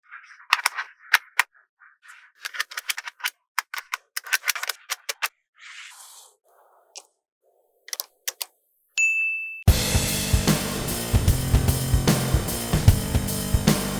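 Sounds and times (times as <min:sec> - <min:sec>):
magnetic balls clicking together: 0:00.5 - 0:01.5, 0:02.4 - 0:05.3, 0:07.9 - 0:08.5.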